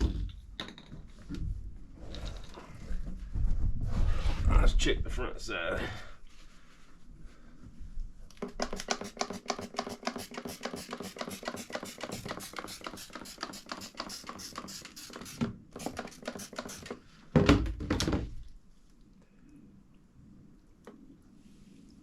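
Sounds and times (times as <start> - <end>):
trigger spray bottle spraying: 8.4 - 17.0.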